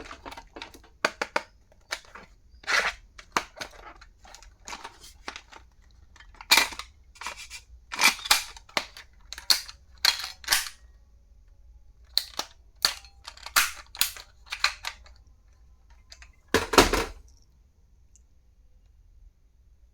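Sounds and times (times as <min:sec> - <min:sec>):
stationery clatter: 0:00.0 - 0:10.8, 0:12.2 - 0:15.1, 0:15.9 - 0:17.3
stationery clicks and snaps: 0:00.0 - 0:10.9, 0:12.1 - 0:15.2.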